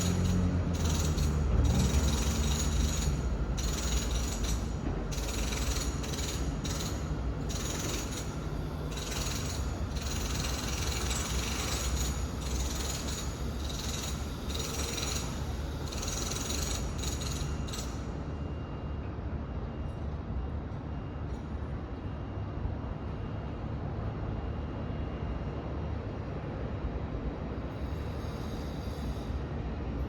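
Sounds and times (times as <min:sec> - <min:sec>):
short bursts of machine noise: 0:00.0 - 0:18.2, 0:27.7 - 0:29.5.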